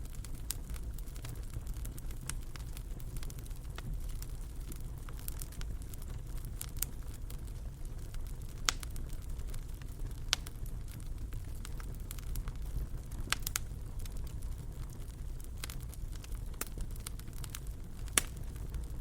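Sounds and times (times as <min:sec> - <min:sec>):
wood fire crackling: 0:00.0 - 0:19.0
fire popping sharply: 0:06.6 - 0:19.0.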